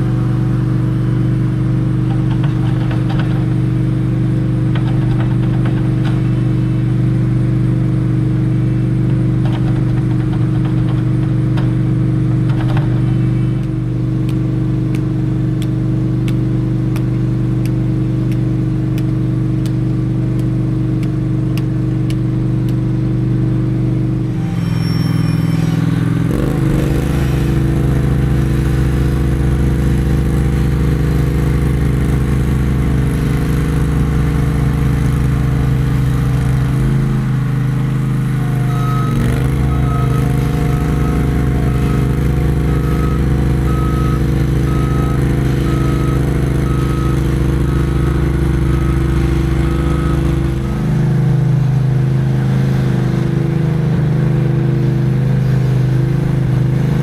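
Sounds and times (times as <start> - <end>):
vehicle engine and road noise: 0.0 - 57.0
faint regular ticking: 13.6 - 22.9.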